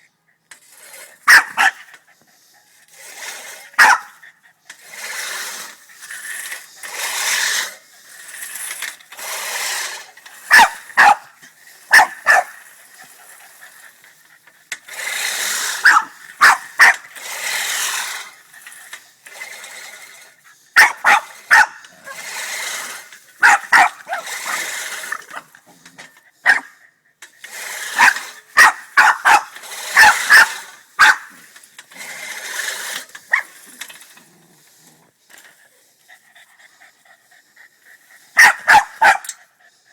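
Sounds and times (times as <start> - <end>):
dog barking: 1.3 - 1.9, 3.8 - 4.2, 10.5 - 11.3, 11.9 - 12.6, 15.8 - 17.0, 20.8 - 21.8, 23.4 - 24.3, 26.4 - 26.8, 28.0 - 31.3, 38.4 - 39.3.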